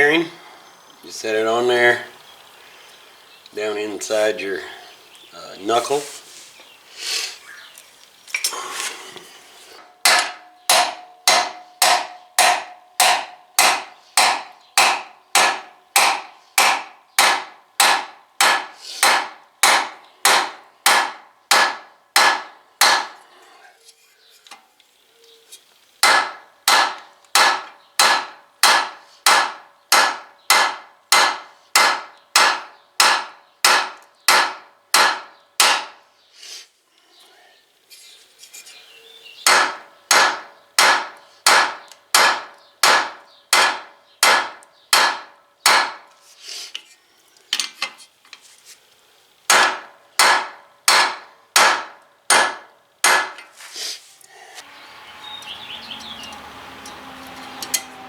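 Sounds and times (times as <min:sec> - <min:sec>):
hammer striking metal: 0:10.0 - 0:23.2, 0:26.0 - 0:36.0, 0:39.5 - 0:46.0, 0:49.5 - 0:53.4.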